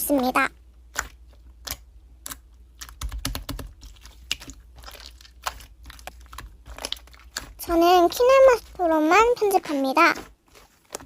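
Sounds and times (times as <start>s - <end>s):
slime clicking and crackling: 0.0s - 11.0s.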